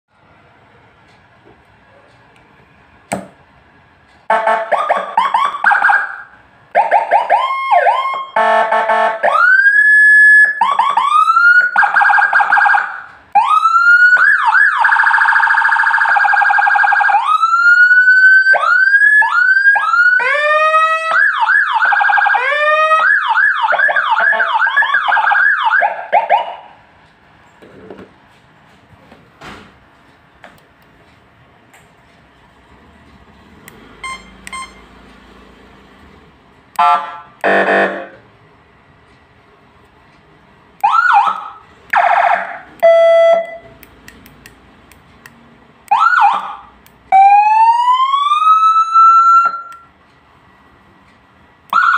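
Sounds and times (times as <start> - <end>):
electronic siren through loudspeaker: 4.3 - 26.8, 36.8 - 38.2, 40.8 - 43.8, 45.9 - 49.9, 51.7 - 51.9.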